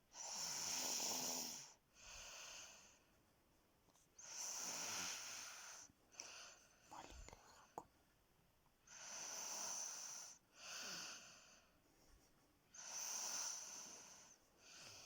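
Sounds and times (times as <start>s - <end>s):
woman snoring: 0.2s - 1.6s.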